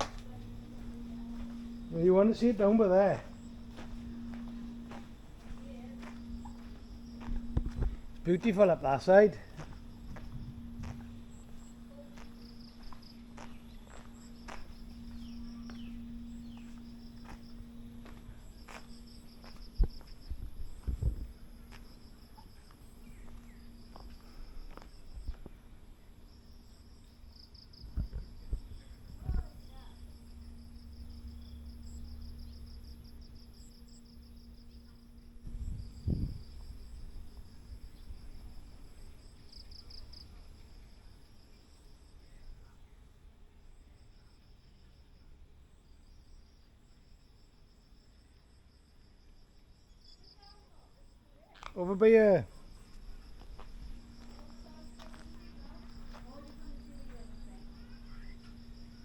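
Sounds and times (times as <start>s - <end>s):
low rumble: 0.0s - 22.0s
steady low hum: 0.0s - 49.6s, 52.2s - 59.0s
insects chirping: 0.0s - 59.0s.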